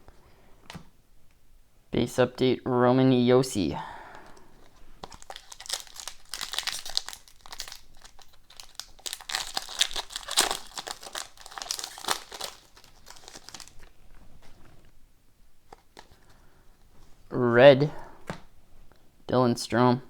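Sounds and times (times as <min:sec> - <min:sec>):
foil wrapper crinkling and tearing: 0:04.3 - 0:14.0.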